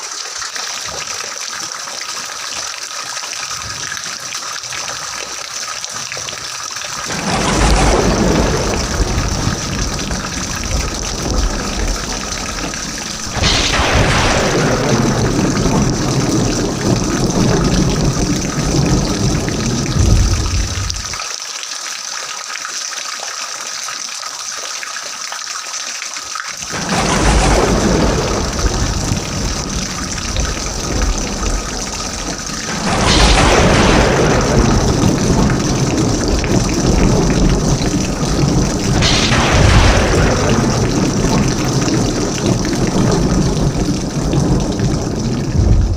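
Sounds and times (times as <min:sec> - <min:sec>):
heavy rain hissing: 0:06.8 - 0:21.2, 0:26.6 - 0:45.9
rolling thunder: 0:07.0 - 0:21.2, 0:26.6 - 0:45.9.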